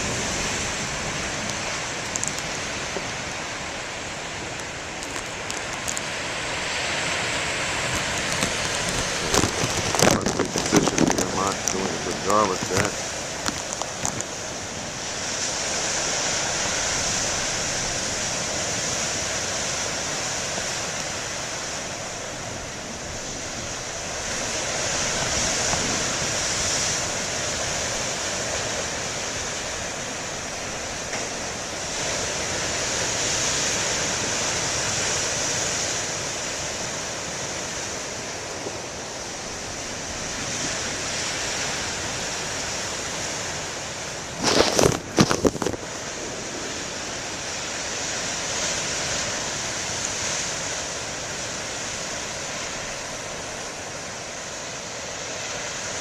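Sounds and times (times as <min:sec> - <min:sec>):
ocean surf breaking: 0:00.0 - 0:56.0.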